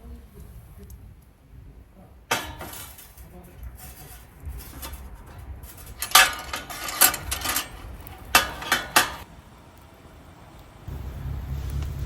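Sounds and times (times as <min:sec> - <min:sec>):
cookware clinking and knocking: 0:02.3 - 0:03.3, 0:04.1 - 0:09.2.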